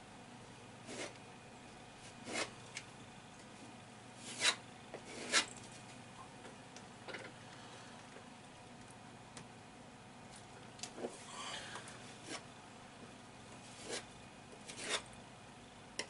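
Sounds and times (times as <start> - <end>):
filling knife scraping a wall: 0.8 - 1.2, 2.2 - 2.6, 4.2 - 5.5, 14.7 - 15.1.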